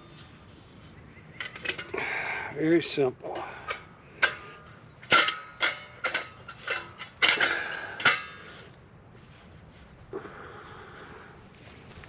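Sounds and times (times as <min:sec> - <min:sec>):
metal stove parts clinking: 0:01.4 - 0:01.9, 0:03.3 - 0:08.4.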